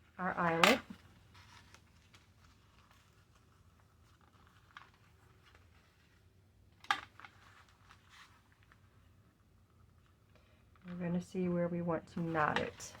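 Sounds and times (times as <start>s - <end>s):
paper rustling: 0.9s - 6.3s.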